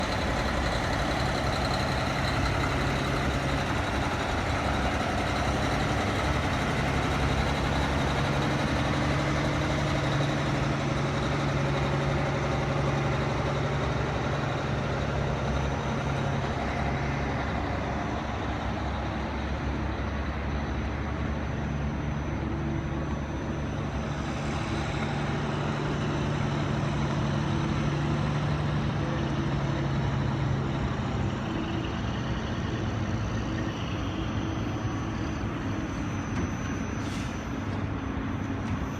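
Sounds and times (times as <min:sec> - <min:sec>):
heavy engine humming: 0:00.0 - 0:38.9.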